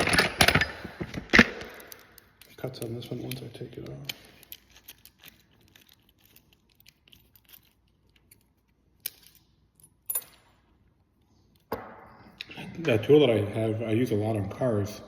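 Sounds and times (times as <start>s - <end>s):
metal keys clinking: 0.0s - 10.6s.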